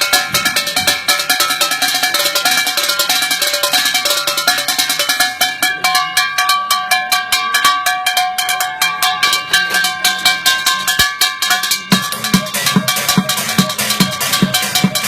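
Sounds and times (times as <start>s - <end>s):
low thumping beat: 0.0s - 15.0s
melodic percussion strikes: 0.0s - 15.0s.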